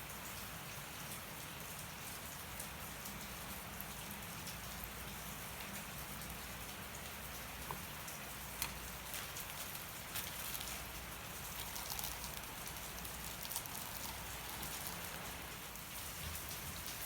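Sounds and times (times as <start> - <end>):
steady rain falling: 0.0 - 17.0
campfire crackling and popping: 8.6 - 15.7.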